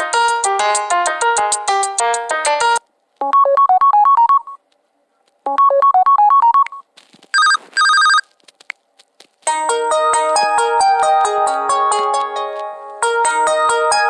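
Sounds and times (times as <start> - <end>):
smartphone ringtone notes: 3.2 - 4.6, 5.5 - 6.8, 7.4 - 8.2
phone double ring: 7.4 - 8.2.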